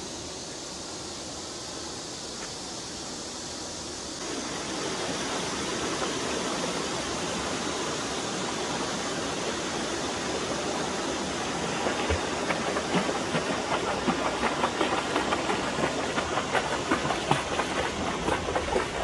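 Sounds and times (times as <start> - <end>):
water rushing over rocks: 4.2 - 19.0.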